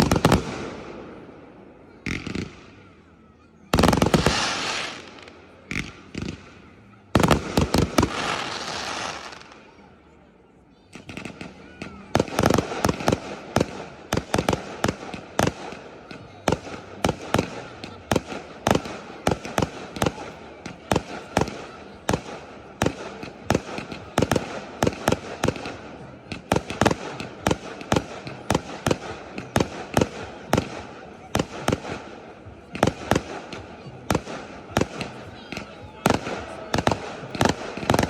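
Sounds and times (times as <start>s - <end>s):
fireworks crackle and hiss: 3.7s - 6.5s, 7.1s - 9.7s, 32.8s - 38.0s.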